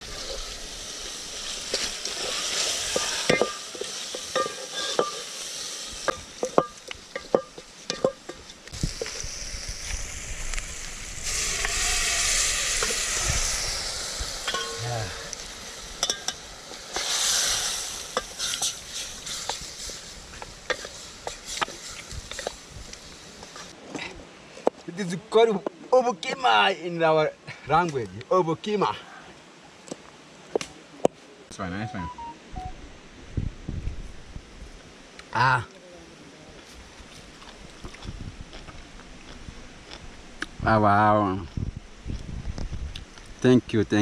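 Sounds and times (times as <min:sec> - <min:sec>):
food sizzling in a pot: 0:00.0 - 0:23.8.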